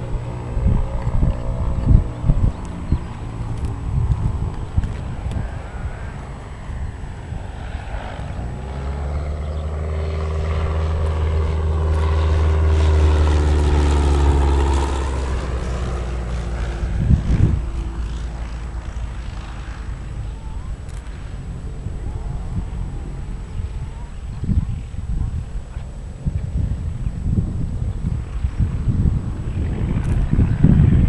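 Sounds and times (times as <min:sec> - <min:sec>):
airship propeller engines droning: 0:00.0 - 0:31.0.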